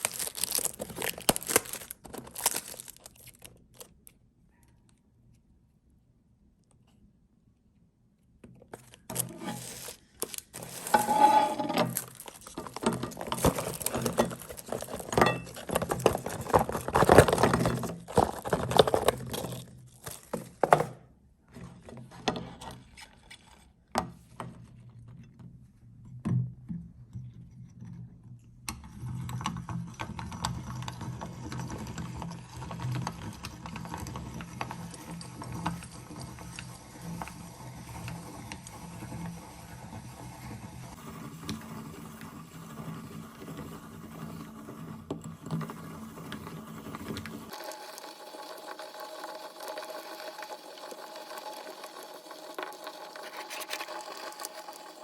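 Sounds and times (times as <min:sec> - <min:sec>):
grinder crunching chocolate: 0:00.0 - 0:04.0, 0:08.8 - 0:20.8, 0:30.5 - 0:42.3, 0:45.6 - 0:55.0.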